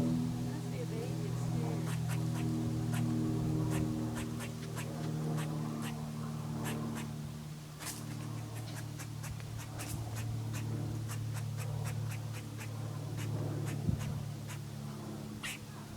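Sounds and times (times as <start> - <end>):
steady low hum: 0.0 - 15.9
squirrel clicking calls: 1.8 - 6.0, 6.6 - 7.2, 7.8 - 14.7, 15.4 - 15.6.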